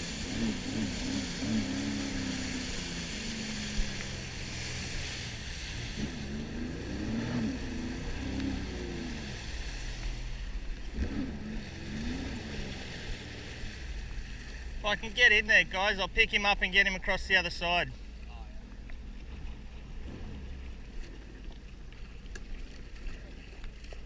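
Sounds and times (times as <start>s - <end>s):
jet ski engine revving: 0.0s - 21.8s
water and wind noise: 0.0s - 24.0s.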